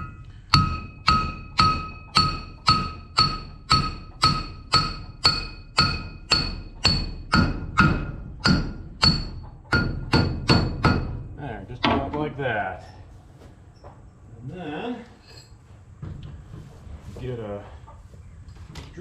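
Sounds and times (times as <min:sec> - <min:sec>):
hammer striking steel: 0:00.0 - 0:12.0.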